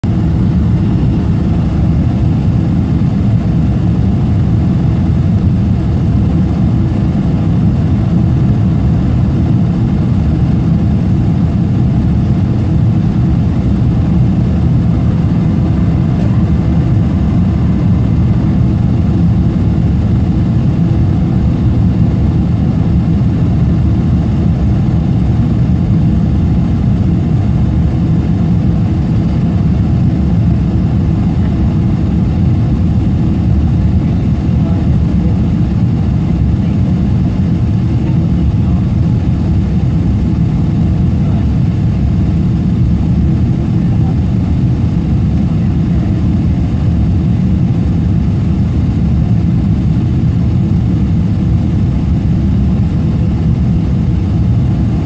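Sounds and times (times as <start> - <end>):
jet engines rumbling: 0.0 - 55.0.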